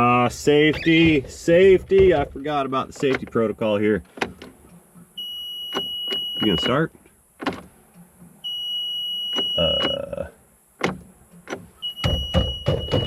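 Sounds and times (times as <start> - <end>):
clicks: 0.7 - 8.4
high warning beep: 5.2 - 6.9, 8.4 - 10.3, 11.8 - 13.0.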